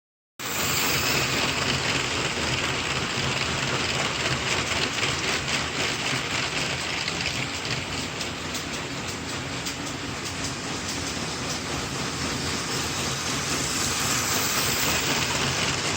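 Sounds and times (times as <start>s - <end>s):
steam locomotive hissing steam: 0.4s - 3.7s, 7.5s - 15.9s.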